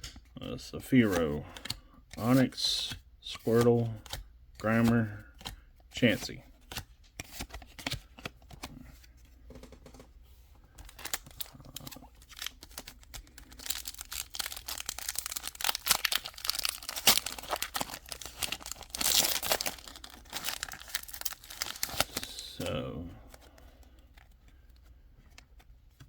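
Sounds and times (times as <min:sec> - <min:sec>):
foil wrapper crinkling and tearing: 0:10.8 - 0:24.0.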